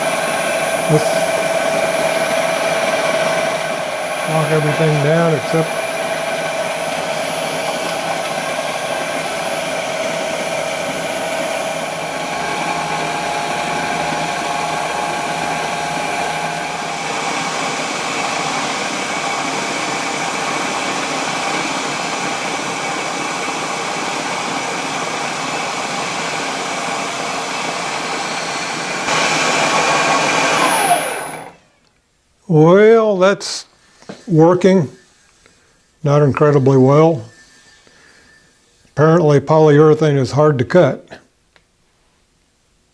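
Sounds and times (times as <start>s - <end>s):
bandsaw wheel spinning: 0.0s - 31.6s
cutting tool shaving tire: 0.0s - 31.7s.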